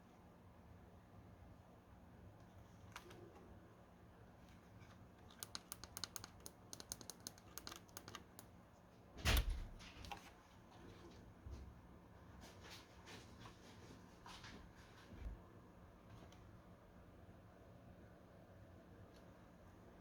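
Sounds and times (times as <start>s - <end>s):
small sharp clicks and taps: 5.3s - 8.5s.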